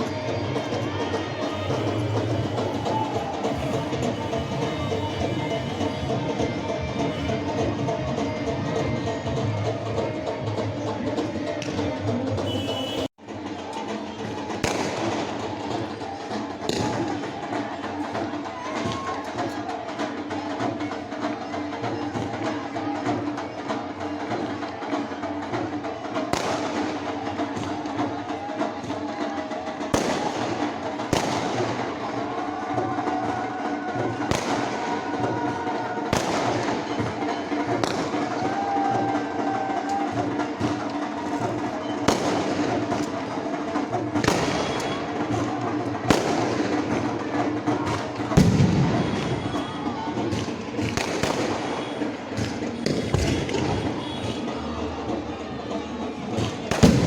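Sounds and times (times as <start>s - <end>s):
music: 0.0s - 57.0s
voices: 0.0s - 57.0s
fireworks bangs: 14.6s - 15.7s, 29.9s - 32.1s, 34.2s - 38.9s, 40.4s - 55.1s, 56.2s - 57.0s.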